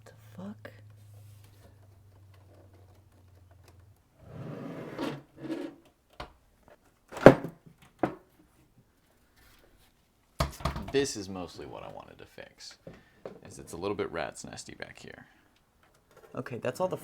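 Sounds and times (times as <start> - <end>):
cables rubbing and scraping: 1.0 - 5.9.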